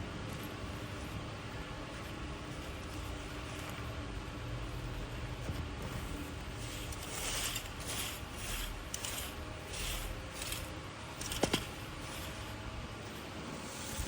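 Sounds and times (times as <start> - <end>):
rake scraping dry leaves: 5.9 - 14.0.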